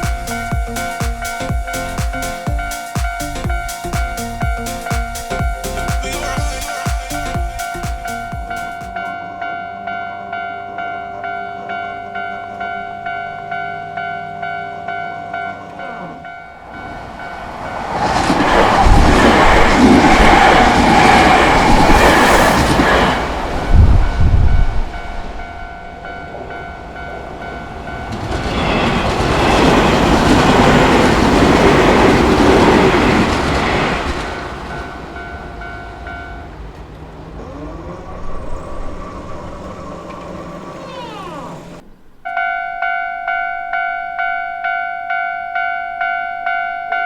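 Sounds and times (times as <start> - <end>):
heavy low thumps: 0.0 - 9.1
crossing warning bell ringing: 0.0 - 47.0
electric train passing: 0.0 - 47.0.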